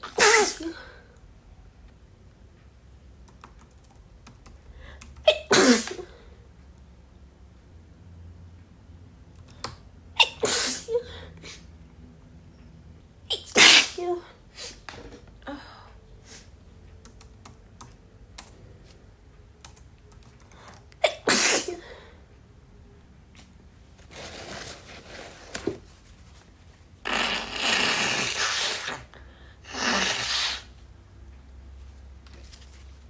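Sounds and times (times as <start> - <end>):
woman sneezing: 0.0 - 1.0, 5.3 - 6.2, 10.2 - 11.7, 13.3 - 14.8, 21.0 - 22.0.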